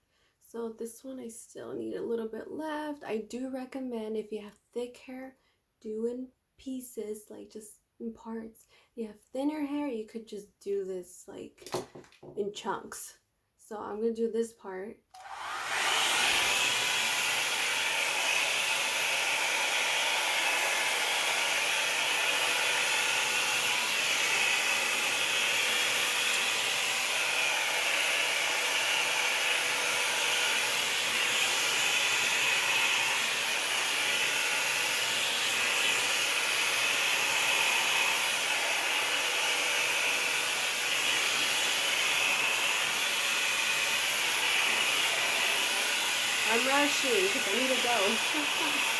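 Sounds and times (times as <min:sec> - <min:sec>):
hair dryer running: 0:15.2 - 0:48.9.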